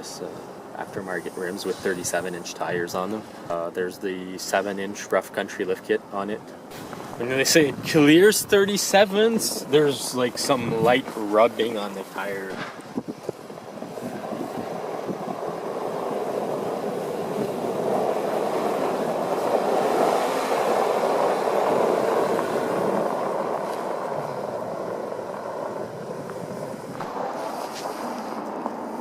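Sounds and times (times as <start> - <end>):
vehicle passing by: 13.8 - 29.0.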